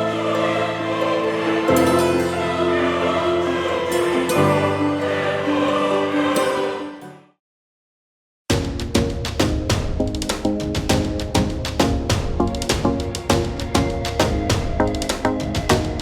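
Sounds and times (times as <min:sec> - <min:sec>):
choir singing sustained chords: 0:00.0 - 0:07.3, 0:13.0 - 0:16.0.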